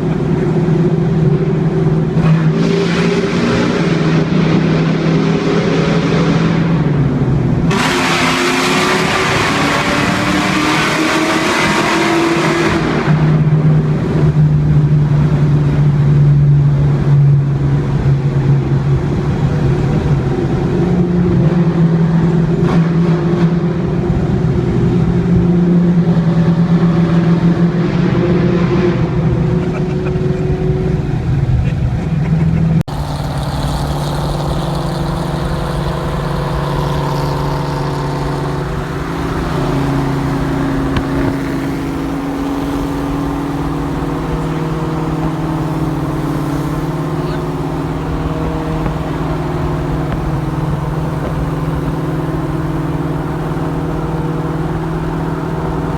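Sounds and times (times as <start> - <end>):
car engine accelerating: 0.0 - 55.9
car engine note: 32.9 - 55.9.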